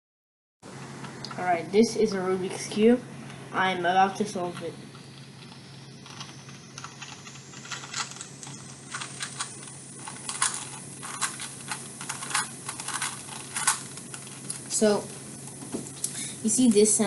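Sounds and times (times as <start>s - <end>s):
puzzle cube clicking: 6.1s - 14.6s.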